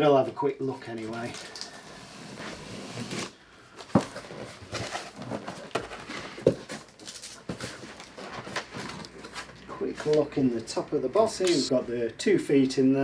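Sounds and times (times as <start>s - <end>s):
cardboard box rustling and scraping: 1.3s - 9.6s.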